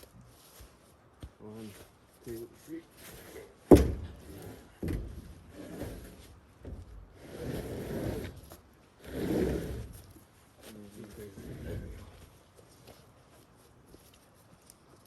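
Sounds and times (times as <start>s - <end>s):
rustling and scraping of wood: 0.0s - 15.0s
wooden slab knocking on boards: 3.7s - 5.3s.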